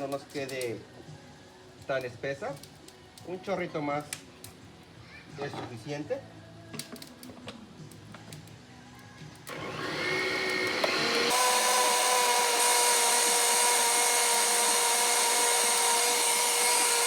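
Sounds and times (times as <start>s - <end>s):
electric blender motor whining: 9.5s - 17.0s.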